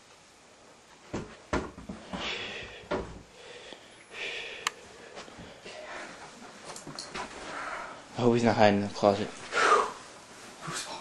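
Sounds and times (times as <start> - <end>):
dull knocks and thumps: 1.1 - 2.2.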